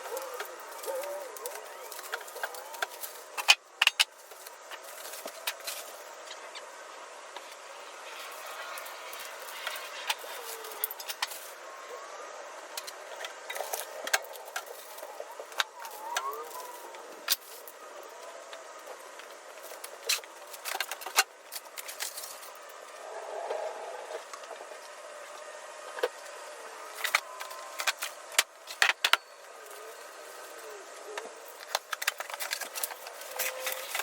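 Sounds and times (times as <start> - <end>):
packaging rustling and scraping: 0.0 - 6.2, 8.2 - 11.7, 19.4 - 22.9, 25.4 - 34.0
parts clicking and knocking: 12.7 - 22.7, 26.9 - 30.0, 31.1 - 34.0.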